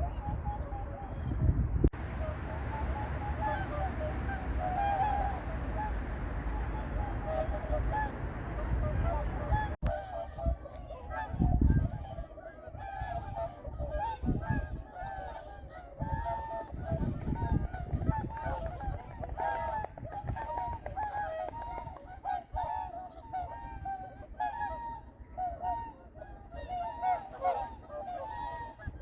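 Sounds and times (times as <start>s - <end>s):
low rumble: 0.0s - 9.8s
swans honking: 0.0s - 29.0s.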